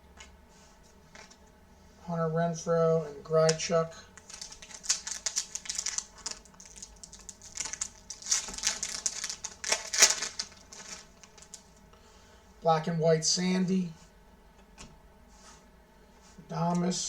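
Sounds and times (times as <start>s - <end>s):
cards being handled: 4.2s - 11.8s
wrapper crinkling and rustling: 4.2s - 11.8s.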